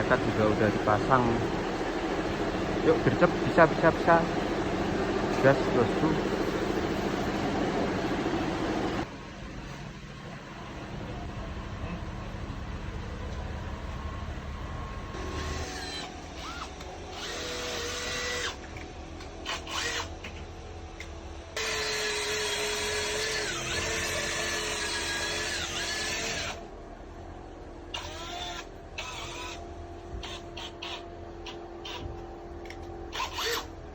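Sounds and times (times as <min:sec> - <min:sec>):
power drill whining: 0:15.2 - 0:20.4, 0:21.6 - 0:26.7, 0:27.9 - 0:31.0, 0:31.8 - 0:33.8.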